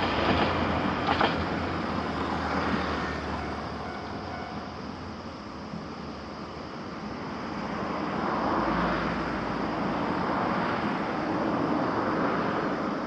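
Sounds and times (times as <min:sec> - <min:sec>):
vehicle passing by: 0:07.6 - 0:12.8.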